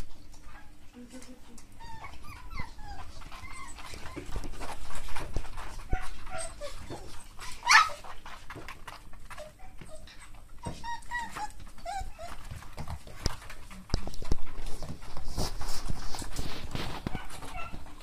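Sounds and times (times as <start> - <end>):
small scratching and clicking: 0.0 - 18.0
puppies whimpering and yipping: 1.7 - 13.8, 14.4 - 18.0
puppy squealing: 1.8 - 4.5, 5.8 - 8.2, 9.3 - 12.6, 17.2 - 17.9.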